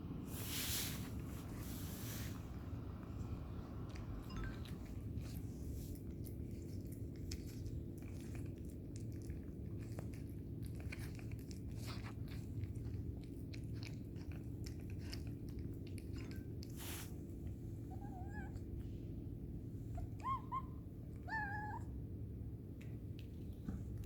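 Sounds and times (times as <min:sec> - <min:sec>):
cat crunching food: 0:03.0 - 0:17.6.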